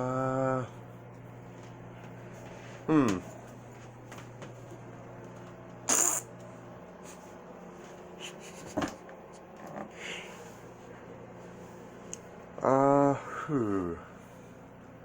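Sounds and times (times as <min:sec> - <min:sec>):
mouth hissing burst: 0:05.9 - 0:06.3.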